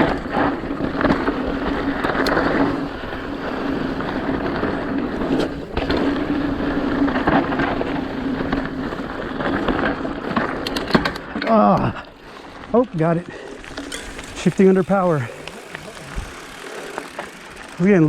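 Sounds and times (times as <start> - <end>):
bike clicks and rattles: 0.0 - 18.0
tyres crunching over dirt and rocks: 12.3 - 18.0
steady buzz: 13.3 - 18.0.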